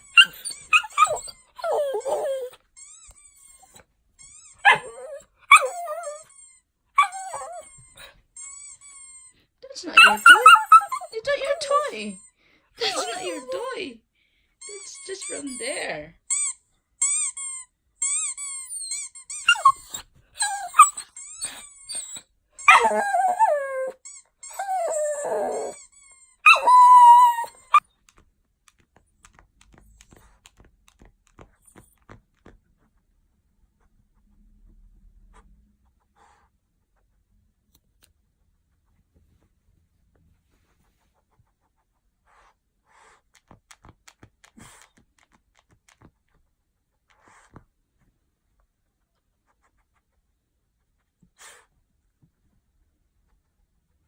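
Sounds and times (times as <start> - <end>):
dog howling and whining: 0.0 - 8.2, 10.0 - 12.0, 18.1 - 27.9
squeaky toy squeaking: 0.0 - 13.9, 14.6 - 27.9
light clicks and taps: 27.9 - 32.8
pet sniffing or panting: 29.2 - 32.5, 35.2 - 37.1, 40.5 - 46.0, 47.0 - 47.7, 50.9 - 51.8.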